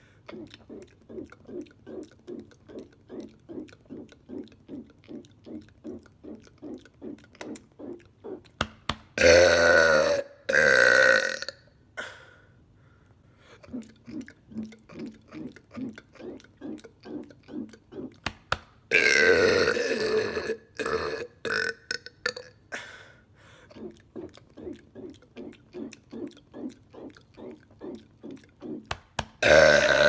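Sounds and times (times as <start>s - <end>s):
short throat sounds: 0.0s - 8.6s, 13.6s - 21.7s, 23.6s - 30.0s
man burping: 9.2s - 11.6s, 18.9s - 22.5s, 23.8s - 30.0s.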